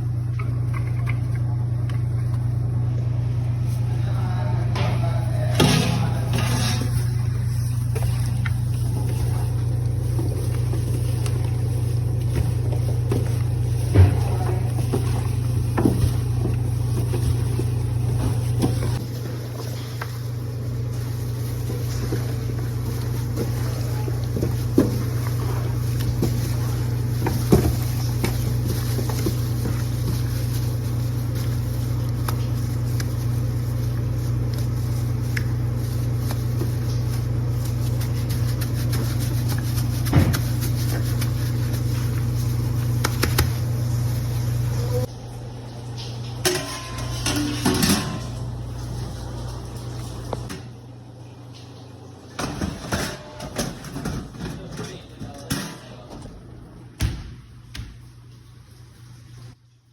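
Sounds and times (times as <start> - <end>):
low machine hum: 0.0 - 59.9.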